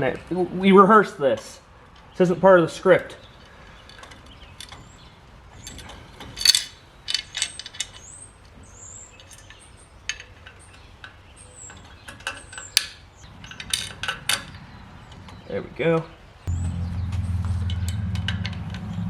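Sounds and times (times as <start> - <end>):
metal clinks: 3.4 - 11.2, 12.2 - 14.6.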